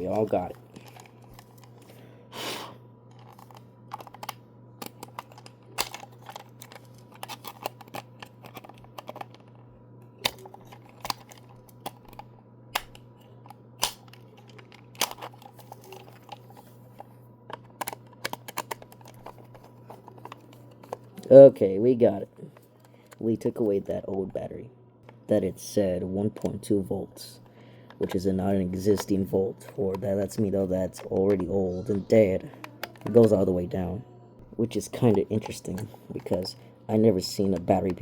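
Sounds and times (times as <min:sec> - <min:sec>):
hands handling plastic toy car: 0:00.0 - 0:02.0, 0:03.1 - 0:09.6, 0:10.2 - 0:21.3, 0:32.5 - 0:33.5, 0:34.8 - 0:36.6
steady low hum: 0:00.0 - 0:38.0.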